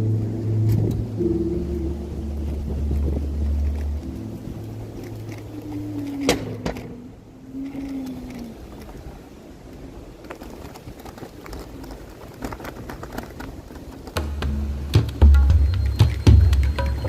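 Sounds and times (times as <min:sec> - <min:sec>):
faint wavering hum: 0:00.0 - 0:10.2
scooter riding rumble: 0:00.0 - 0:17.0
knocks and clicks from bumps: 0:12.3 - 0:17.0.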